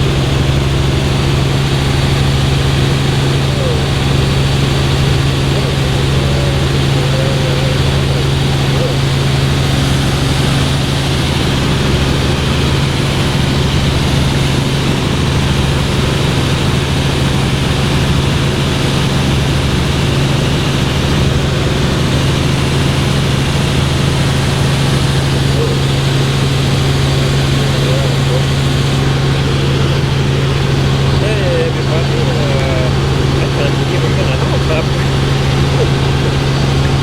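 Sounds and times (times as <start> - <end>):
helicopter engine and rotor drone: 0.0 - 37.0.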